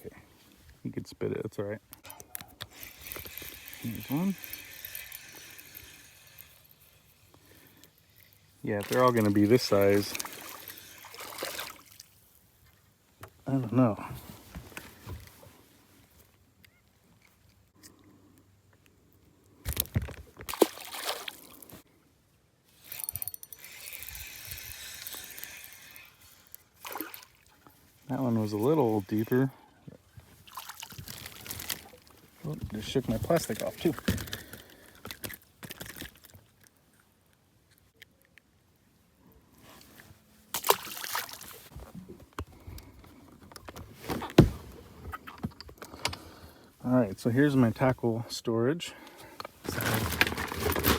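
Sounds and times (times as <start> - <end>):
fishing reel winding: 2.6 - 7.2, 9.6 - 11.1, 22.8 - 27.2
water splashing: 8.8 - 12.1, 20.5 - 21.6, 30.4 - 32.1, 40.5 - 41.7
gear knocking and rustling: 31.0 - 36.2, 49.4 - 50.9.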